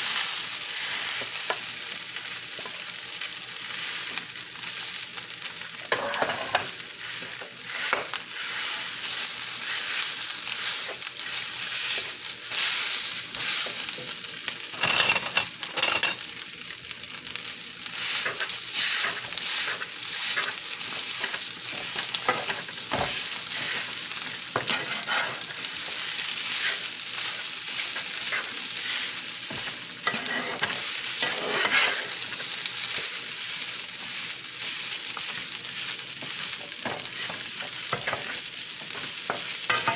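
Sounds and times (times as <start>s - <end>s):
food sizzling in a pan: 0.0s - 39.9s
utensil scraping a pan: 5.9s - 11.0s, 14.8s - 16.2s, 18.0s - 20.6s, 24.6s - 33.1s, 36.2s - 39.9s.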